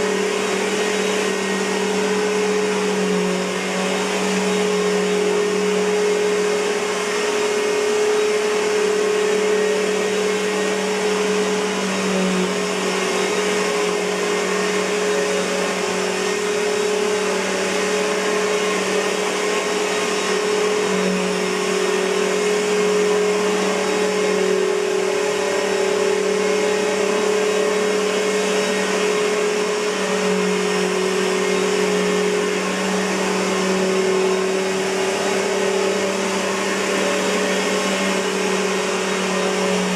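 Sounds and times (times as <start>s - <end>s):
vacuum cleaner motor hum: 0.0s - 39.9s.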